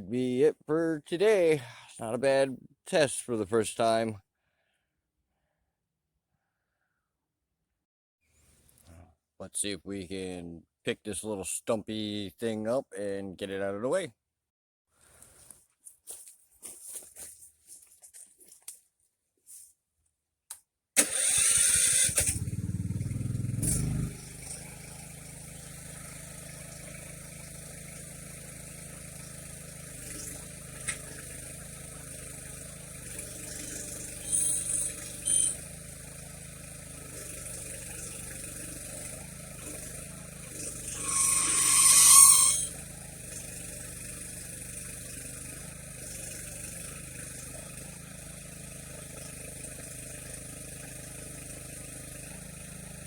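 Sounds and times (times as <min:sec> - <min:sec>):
short louder engine bursts: 0:21.0 - 0:53.0
small engine running: 0:21.0 - 0:53.0.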